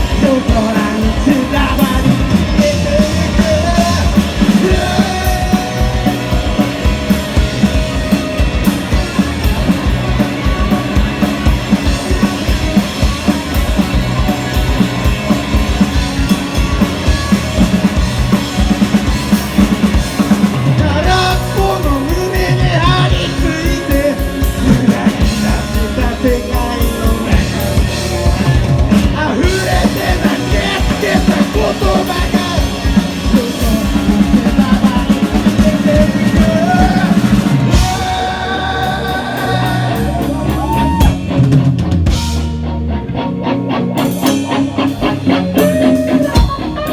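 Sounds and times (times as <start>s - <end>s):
person singing: 0.0s - 6.9s, 20.5s - 41.2s, 45.3s - 46.9s
drum kit beat: 0.0s - 42.6s, 44.0s - 46.9s
rock band playing: 0.0s - 46.9s.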